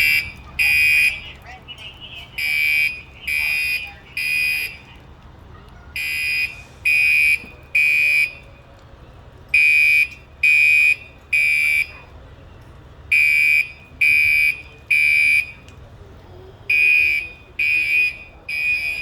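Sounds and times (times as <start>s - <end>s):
fire alarm beeps: 0.0s - 4.9s, 6.0s - 8.5s, 9.6s - 12.0s, 13.1s - 15.8s, 16.7s - 19.0s.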